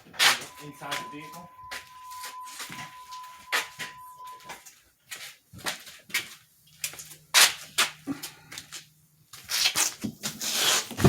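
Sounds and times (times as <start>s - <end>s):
steady high-pitched tone: 0.0s - 4.6s.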